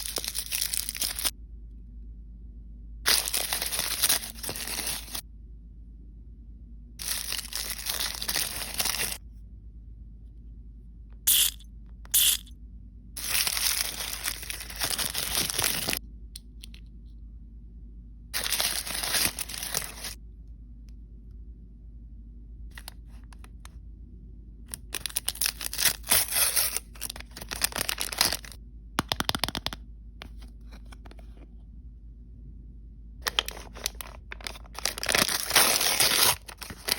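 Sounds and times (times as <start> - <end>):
packaging tearing and crinkling: 0.0 - 1.3, 3.1 - 5.2, 7.0 - 9.2, 13.2 - 16.0, 18.4 - 20.2, 24.7 - 28.6, 33.2 - 36.9.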